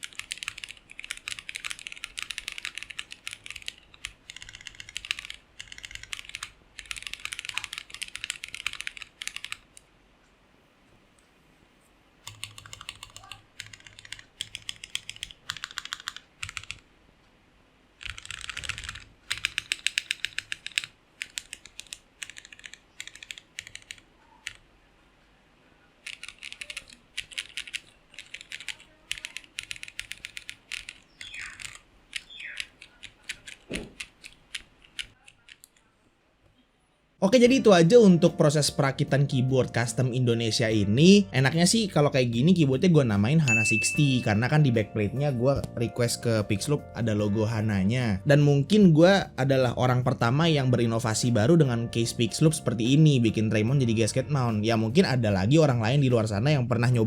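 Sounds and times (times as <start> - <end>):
mechanical keyboard typing: 0.0 - 9.8, 12.2 - 16.8, 18.0 - 24.6, 26.0 - 35.8.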